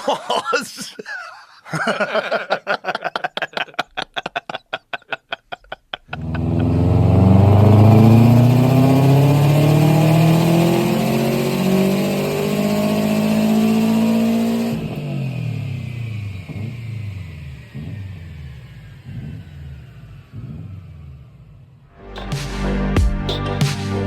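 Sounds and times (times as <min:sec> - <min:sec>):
car engine accelerating hard: 0:06.1 - 0:21.9.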